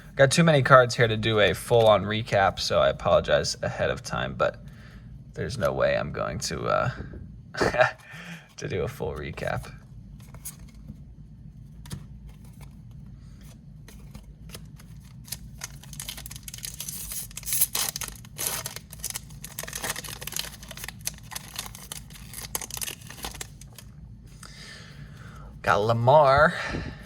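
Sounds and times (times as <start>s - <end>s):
cards and plastic wrapping rustling: 8.0s - 24.4s.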